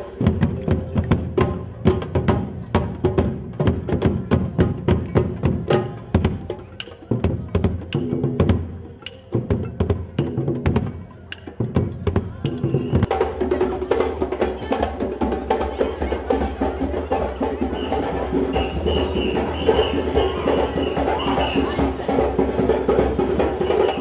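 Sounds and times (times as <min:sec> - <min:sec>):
percussion-led music: 0:00.0 - 0:24.0
wood-block-like clicking strikes: 0:04.4 - 0:13.1.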